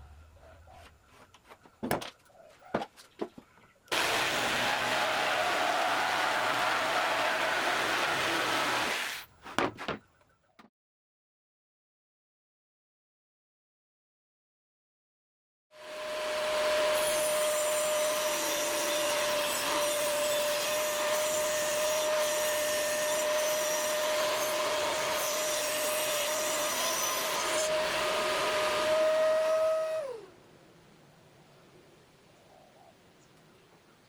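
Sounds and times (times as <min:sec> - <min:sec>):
electric power tool whining: 0:03.9 - 0:09.2, 0:15.8 - 0:30.2.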